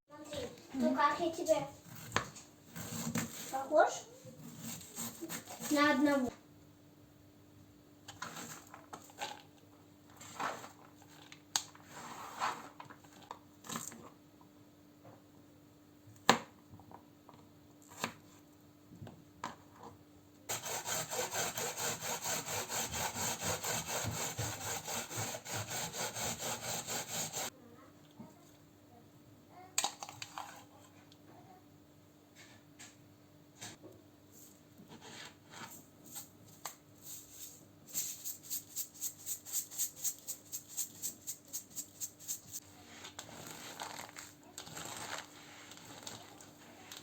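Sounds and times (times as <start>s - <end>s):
rhythmic rasping scraping: 20.5s - 27.5s.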